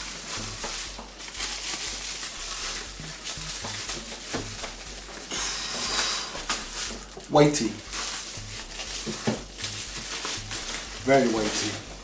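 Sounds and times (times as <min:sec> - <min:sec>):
packing rustling: 0:00.0 - 0:12.0.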